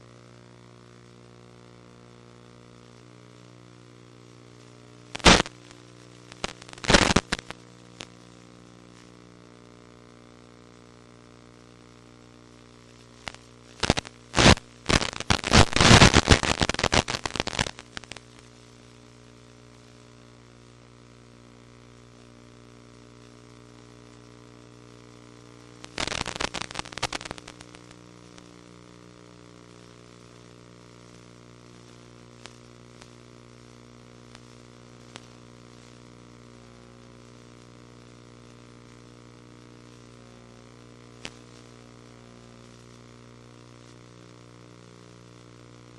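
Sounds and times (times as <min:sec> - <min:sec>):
crackling and popping static: 0:00.0 - 0:45.9
electrical hum: 0:00.0 - 0:45.9
faint clicks: 0:04.6 - 0:08.2, 0:12.9 - 0:18.5, 0:34.3 - 0:35.4.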